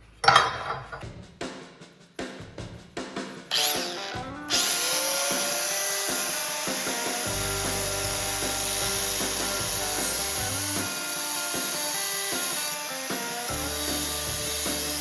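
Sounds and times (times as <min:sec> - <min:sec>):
metal clinks and knocks: 0:00.2 - 0:01.2
power grinder grinding steel: 0:03.5 - 0:15.0.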